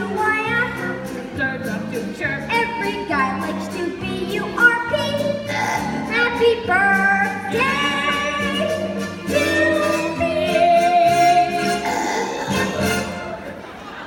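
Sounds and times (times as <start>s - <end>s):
instrumental accompaniment: 0.0s - 13.6s
children singing together: 3.7s - 12.8s.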